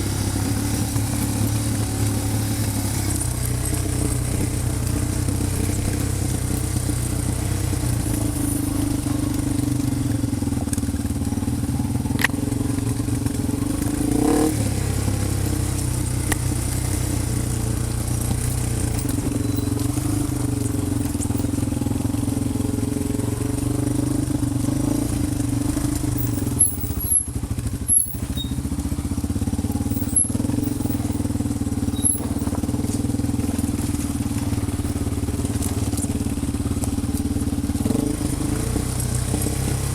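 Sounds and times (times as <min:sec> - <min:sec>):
vehicle engine running: 0:00.0 - 0:39.9
sharp clicks and knocks: 0:12.1 - 0:12.4, 0:29.7 - 0:36.2.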